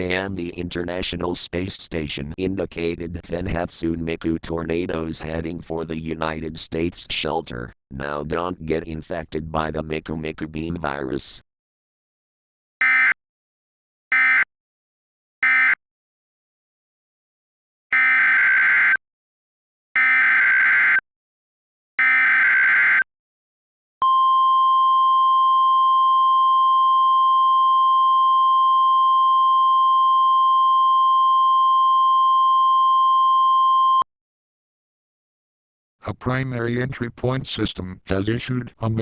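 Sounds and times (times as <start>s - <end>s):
steady single-pitch attention tone: 24.0s - 34.0s.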